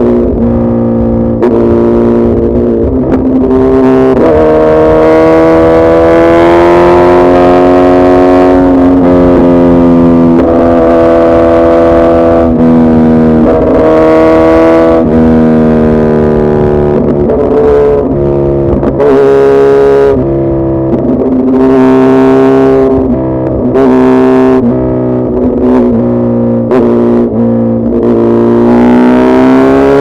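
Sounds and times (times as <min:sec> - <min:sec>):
motorcycle engine at high revs: 0:00.0 - 0:30.0.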